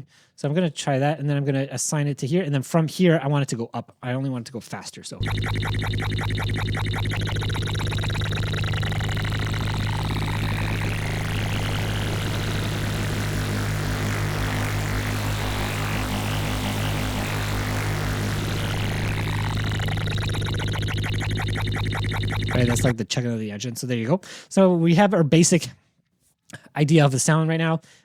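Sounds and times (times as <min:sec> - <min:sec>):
steady low hum: 0:05.2 - 0:22.9
synthesized sci-fi engine sound: 0:05.2 - 0:22.9.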